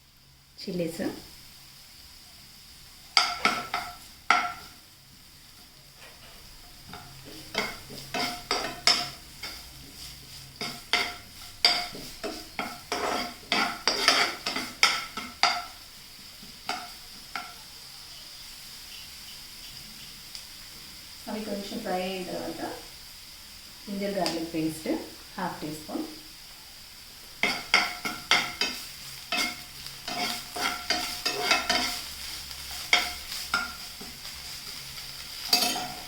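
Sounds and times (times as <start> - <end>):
onions sizzling in hot oil: 0.0 - 36.0
spatula scraping and knocking pan: 3.1 - 4.8, 6.0 - 15.8, 16.4 - 17.6, 27.4 - 36.0.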